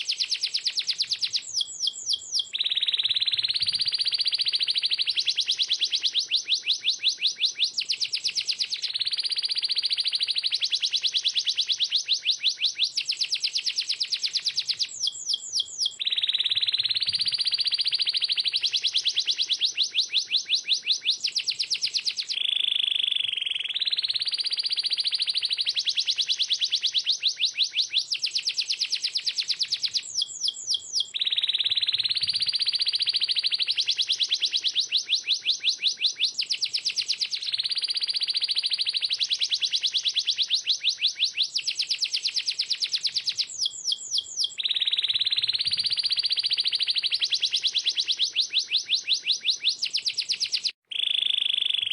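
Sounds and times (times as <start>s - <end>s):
canary singing trills: 0.0s - 51.9s.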